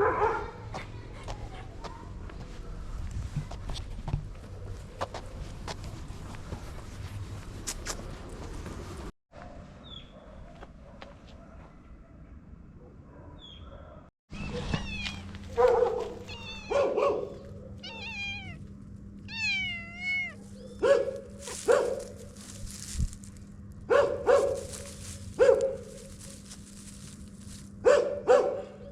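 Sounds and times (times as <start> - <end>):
dogs barking: 0.0 - 3.0, 9.4 - 14.8, 15.4 - 18.0, 20.4 - 22.6, 23.8 - 26.6, 27.8 - 28.9.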